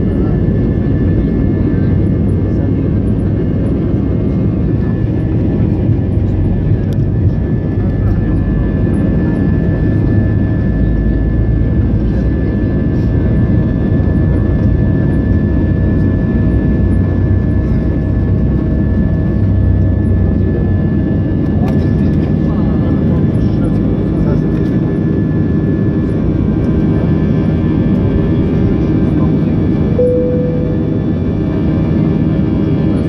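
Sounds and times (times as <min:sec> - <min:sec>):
airliner cabin engine drone: 0:00.0 - 0:33.0.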